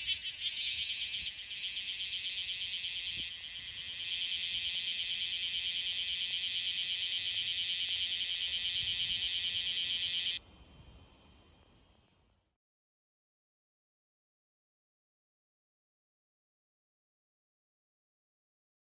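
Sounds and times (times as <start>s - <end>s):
cicada pulsing buzz: 0.0s - 10.4s.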